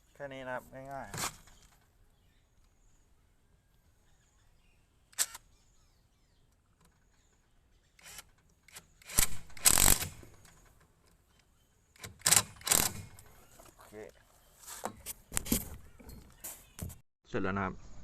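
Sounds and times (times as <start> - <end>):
sharp click: 5.1 - 5.5.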